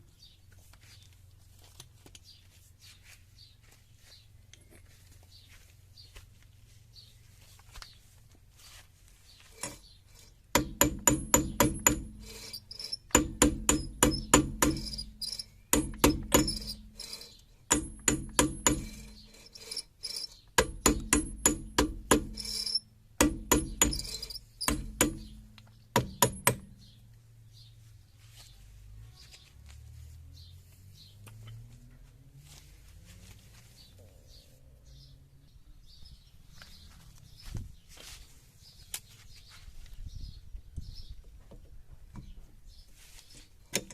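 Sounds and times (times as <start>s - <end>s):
hammer blows on metal: 9.6s - 26.8s.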